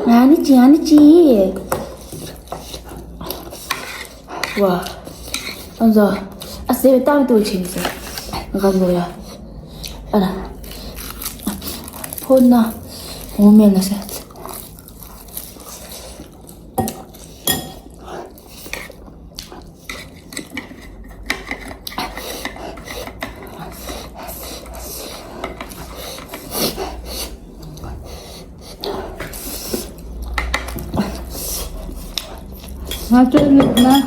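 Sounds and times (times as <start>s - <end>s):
utensils clicking against dishes: 32.8s - 34.0s.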